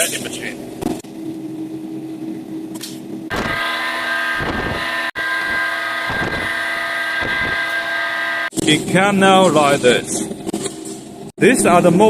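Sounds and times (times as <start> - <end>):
machinery humming: 0.6 - 11.3
high-pitched machine whine: 3.3 - 9.6.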